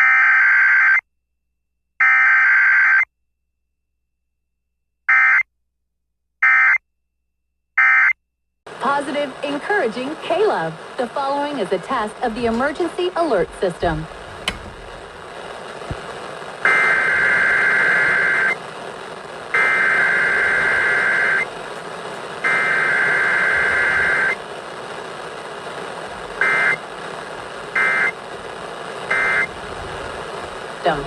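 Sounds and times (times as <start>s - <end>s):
radio hiss: 8.7s - 31.0s.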